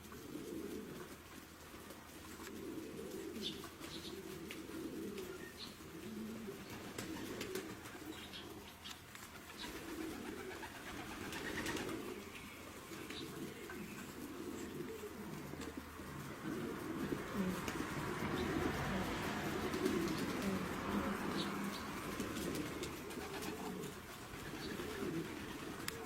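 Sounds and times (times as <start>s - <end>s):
pigeons cooing: 0.0s - 26.0s.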